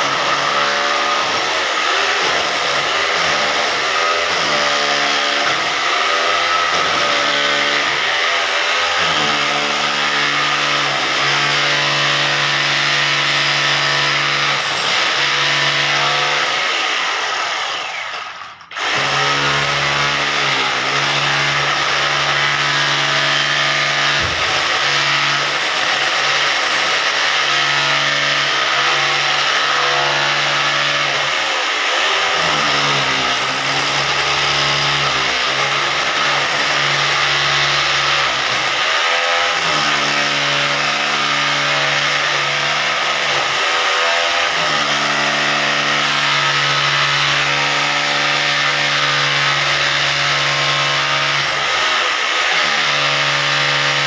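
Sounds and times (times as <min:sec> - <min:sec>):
hammer drill motor whining: 0:00.0 - 0:54.0
harsh gritty cutting noise: 0:00.0 - 0:54.0.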